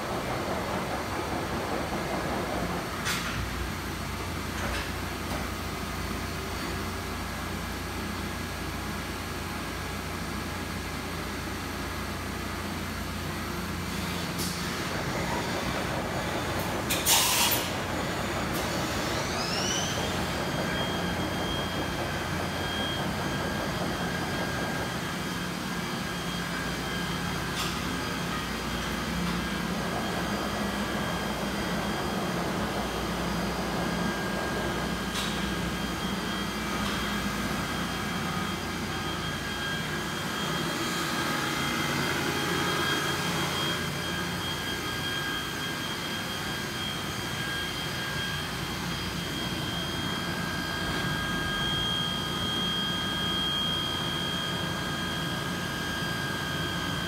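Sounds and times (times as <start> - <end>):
machining center humming: 0.0 - 57.0
spindle whine: 14.4 - 57.0.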